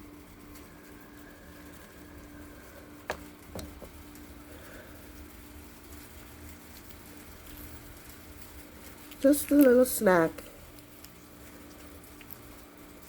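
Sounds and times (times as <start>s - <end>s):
faint steady hum: 0.0s - 13.0s
pea pods snapping: 8.8s - 10.0s.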